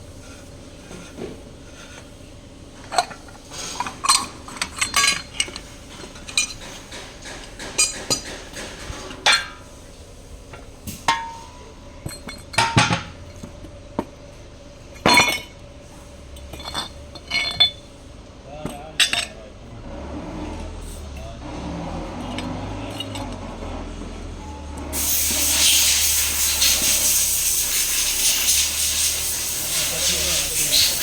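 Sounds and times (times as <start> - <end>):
metal parts and tools clanking: 2.8 - 9.6, 16.4 - 17.8, 18.7 - 19.4, 22.2 - 23.6.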